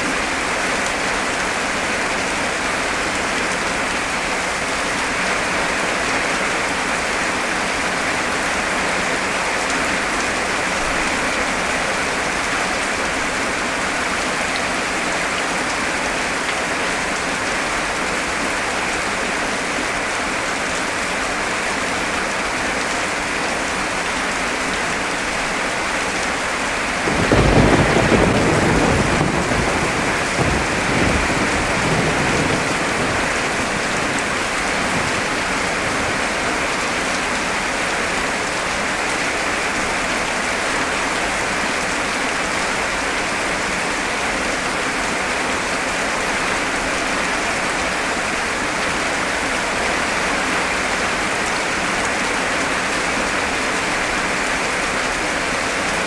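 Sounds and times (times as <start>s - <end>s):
heavy rain: 0.0s - 56.0s
thunder clap and rumble: 27.1s - 35.8s.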